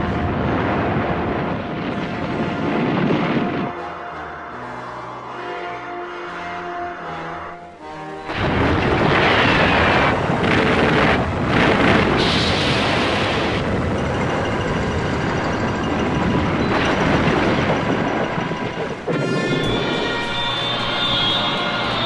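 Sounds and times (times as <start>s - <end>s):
explosion blast with rushing roar: 8.3s - 22.0s
faint music: 11.5s - 22.0s.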